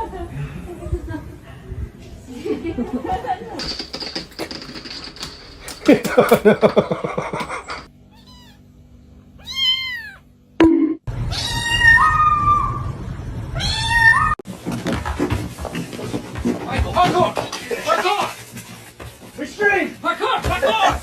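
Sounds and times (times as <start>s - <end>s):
cats meowing: 8.0s - 8.7s, 9.4s - 10.3s, 11.3s - 12.9s, 13.5s - 14.4s.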